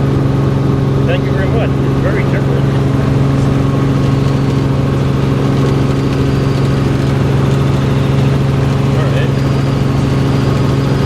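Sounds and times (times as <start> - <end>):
helicopter engine and rotor drone: 0.0 - 11.0.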